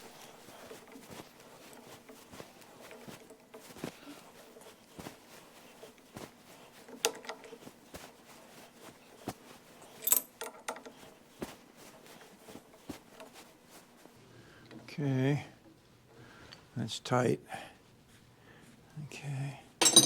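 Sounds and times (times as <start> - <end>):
metal tools knocking and clinking: 10.0 - 10.6.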